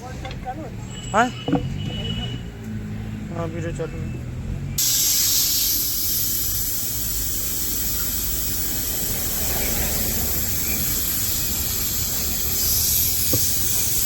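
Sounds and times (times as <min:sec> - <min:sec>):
compressed air hissing: 0:04.8 - 0:14.0.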